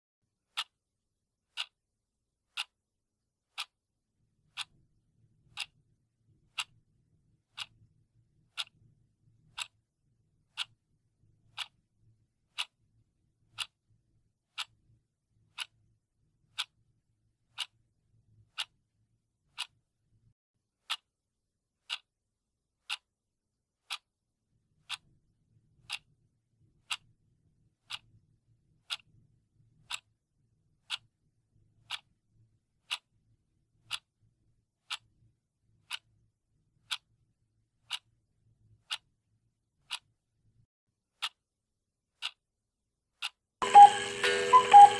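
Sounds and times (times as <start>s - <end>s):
clock ticking: 0.5s - 0.8s, 1.5s - 1.8s, 2.5s - 2.8s, 3.5s - 3.7s, 4.5s - 4.8s, 5.5s - 5.8s, 7.5s - 7.8s, 8.5s - 8.8s, 9.5s - 9.8s, 10.5s - 10.8s, 11.6s - 11.8s, 13.6s - 13.8s, 43.6s - 44.9s.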